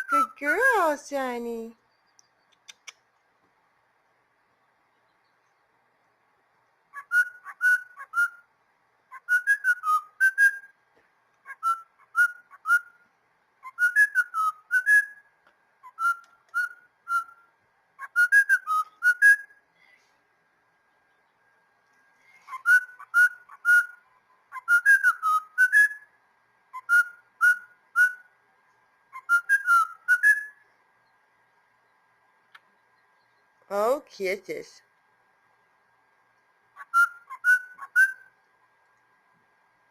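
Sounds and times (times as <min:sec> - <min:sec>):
cockatiel whistling a tune: 0:06.9 - 0:08.5, 0:09.1 - 0:10.7, 0:11.4 - 0:13.0, 0:13.6 - 0:19.6, 0:22.4 - 0:26.1, 0:26.7 - 0:28.3, 0:29.1 - 0:30.6, 0:36.8 - 0:38.3.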